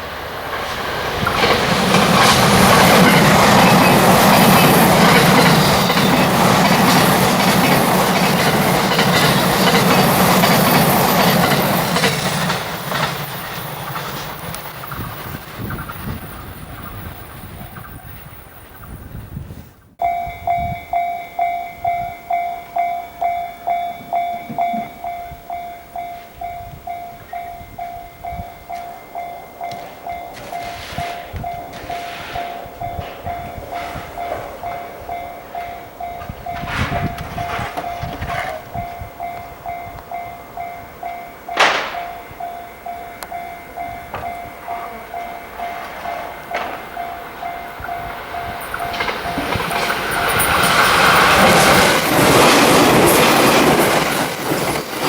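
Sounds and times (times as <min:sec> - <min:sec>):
train rumbling and clattering past: 0:00.0 - 0:55.0
level crossing warning bell: 0:01.4 - 0:19.1, 0:20.0 - 0:55.0
sharp crack: 0:41.6 - 0:42.1.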